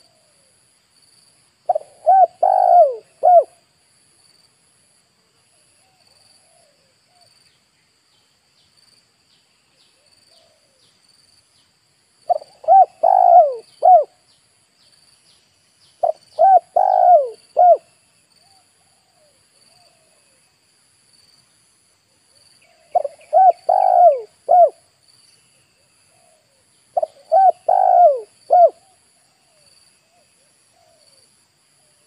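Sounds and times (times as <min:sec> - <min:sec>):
faint high pulsing chirr: 0:01.6 - 0:04.3, 0:12.2 - 0:20.5, 0:22.4 - 0:32.0
dove cooing: 0:01.7 - 0:03.6, 0:12.3 - 0:14.2, 0:16.0 - 0:17.9, 0:22.7 - 0:24.8, 0:26.1 - 0:29.0.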